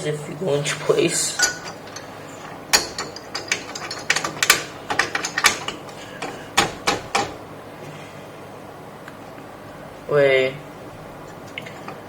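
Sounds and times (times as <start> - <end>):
computer part clicking into case: 2.6 - 7.4.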